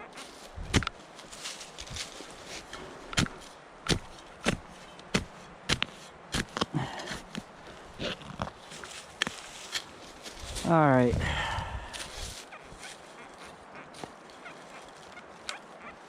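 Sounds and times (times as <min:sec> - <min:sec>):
digging tool chopping into ground: 0:00.6 - 0:01.0, 0:02.7 - 0:08.1.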